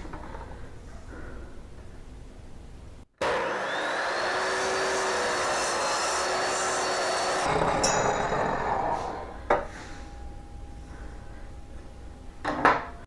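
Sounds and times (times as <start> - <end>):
power tool running against wood: 3.2 - 9.4.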